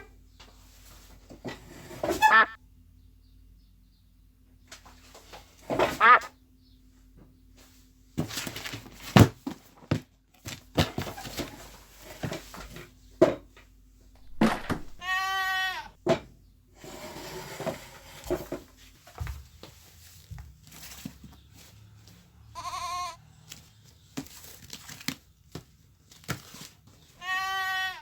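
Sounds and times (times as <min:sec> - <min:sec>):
goat bleating: 0:02.2 - 0:02.6, 0:06.0 - 0:06.3, 0:14.8 - 0:16.0, 0:22.6 - 0:23.2, 0:27.2 - 0:28.0
knocks and thuds: 0:14.2 - 0:15.1.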